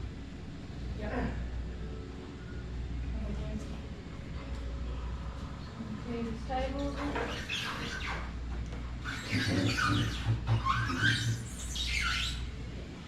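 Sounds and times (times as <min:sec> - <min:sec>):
metal table squeaking: 0:06.9 - 0:08.4, 0:09.0 - 0:12.5.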